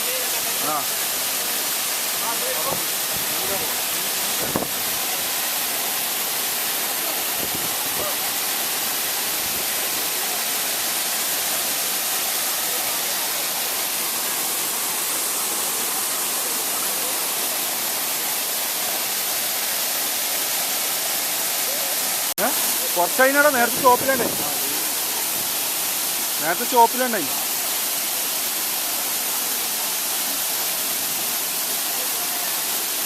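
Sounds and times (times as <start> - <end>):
falling water rushing: 0.0 - 33.0.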